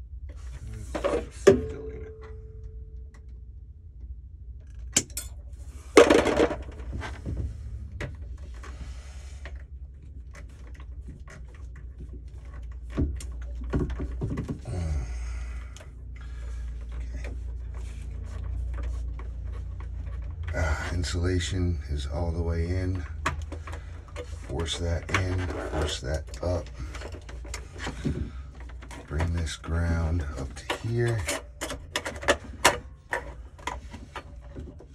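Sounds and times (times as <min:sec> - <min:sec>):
steady low hum: 0:00.0 - 0:34.9
handling clicks and knocks: 0:00.9 - 0:03.3, 0:04.6 - 0:08.8, 0:09.4 - 0:34.9.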